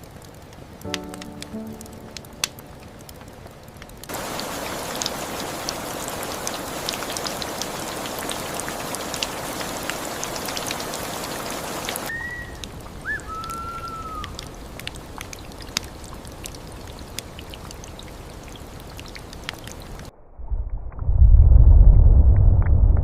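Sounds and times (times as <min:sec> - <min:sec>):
rain falling: 0:00.0 - 0:20.1
raindrops ticking on a surface: 0:00.0 - 0:20.1.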